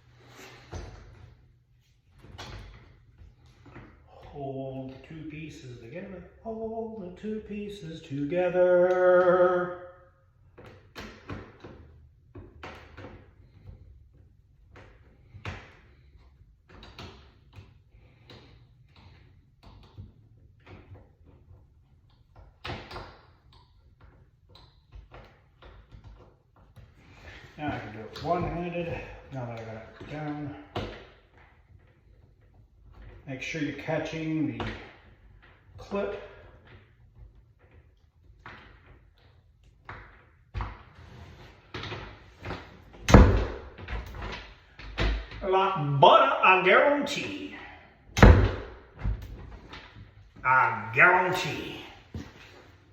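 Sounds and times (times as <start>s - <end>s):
door slamming shut: 48.2s - 49.2s.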